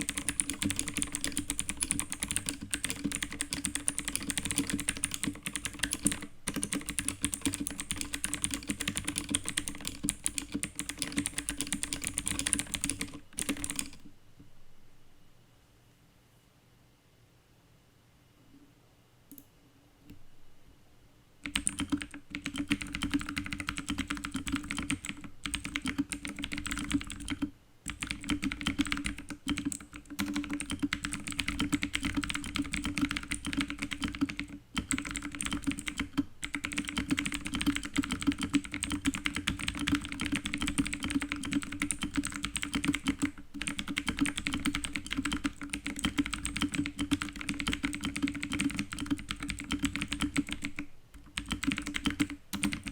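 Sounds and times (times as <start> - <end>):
fast clicky mechanical keyboard typing: 0.0 - 14.0, 21.4 - 52.9.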